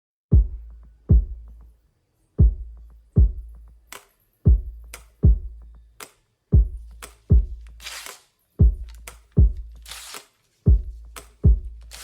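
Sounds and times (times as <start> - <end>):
electronic beat with deep kick drum: 0.3 - 1.7, 2.4 - 3.9, 4.5 - 5.9, 6.6 - 7.9, 8.6 - 10.0, 10.7 - 12.0
sharp clap-like hit: 7.0 - 8.3.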